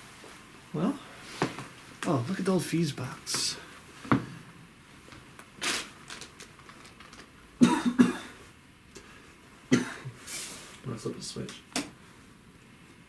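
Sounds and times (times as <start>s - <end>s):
person coughing: 7.6s - 8.4s, 9.7s - 10.2s.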